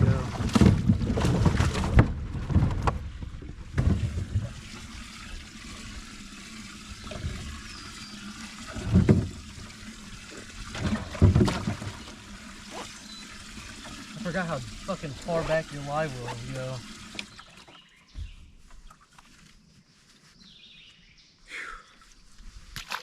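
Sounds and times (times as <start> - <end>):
loud splashes or knocks: 0.0 - 4.9, 10.7 - 12.9
water trickling and splashing: 0.0 - 19.6, 22.2 - 23.0.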